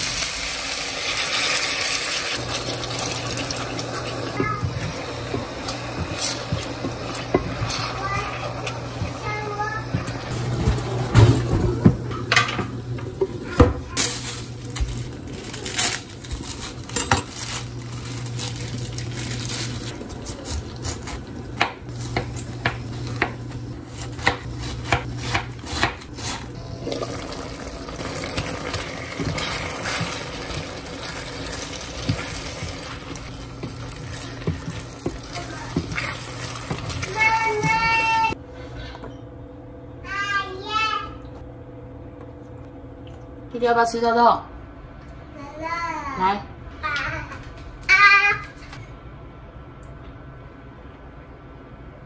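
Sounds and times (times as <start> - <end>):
utensils clinking against pots: 16.6 - 17.7.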